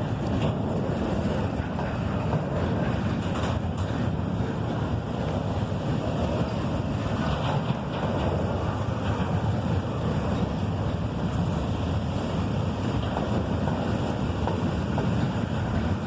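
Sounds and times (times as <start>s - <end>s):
freight train wheels rumbling: 0.0s - 16.0s
wind on microphone: 0.0s - 16.0s.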